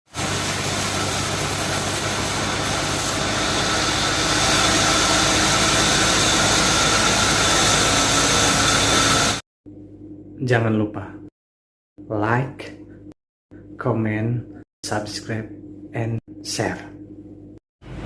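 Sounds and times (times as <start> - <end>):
sawmill running: 0.1 - 9.4
steady whine: 0.1 - 9.4.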